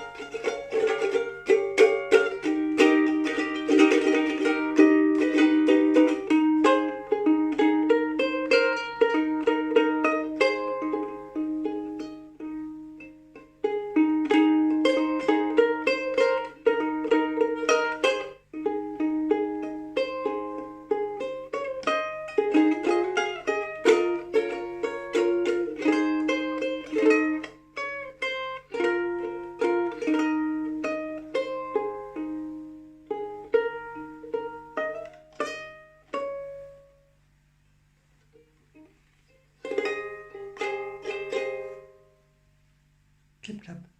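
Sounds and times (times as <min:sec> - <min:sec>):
ukulele plucked notes: 0:00.0 - 0:43.4.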